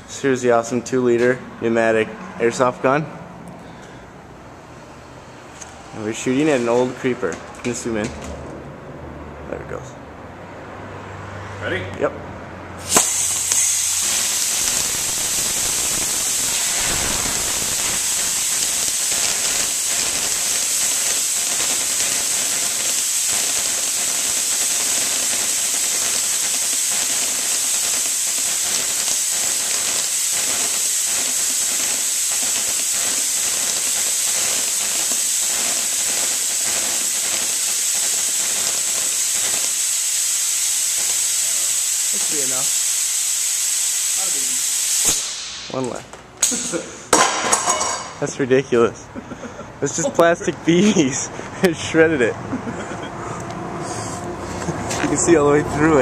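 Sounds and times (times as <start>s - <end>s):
compressed air hissing: 12.8s - 45.9s.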